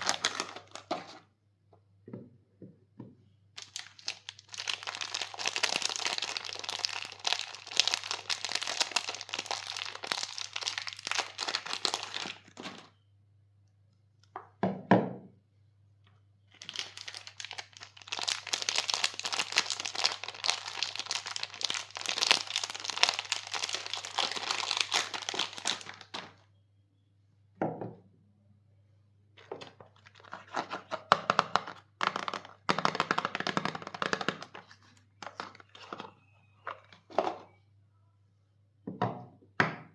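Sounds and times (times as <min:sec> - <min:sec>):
wrapper crinkling and tearing: 0:00.0 - 0:01.2, 0:03.6 - 0:12.9, 0:16.5 - 0:26.4, 0:30.0 - 0:30.9.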